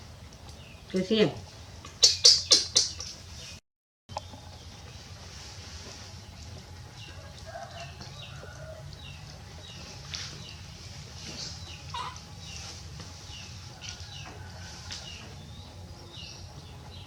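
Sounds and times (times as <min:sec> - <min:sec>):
small animal chirping: 0:02.0 - 0:03.2.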